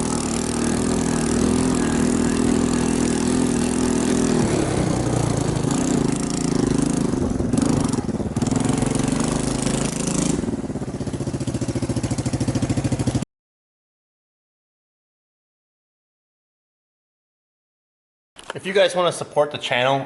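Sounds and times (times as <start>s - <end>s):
small motorcycle engine running: 0.0s - 13.2s.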